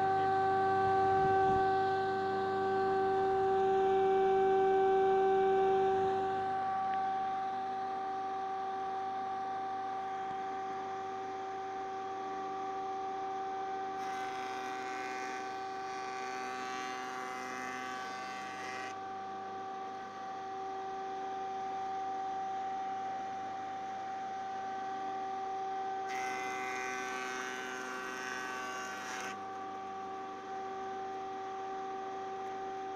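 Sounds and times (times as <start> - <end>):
woodworking machine motor hum: 14.0 - 19.0, 26.1 - 30.1.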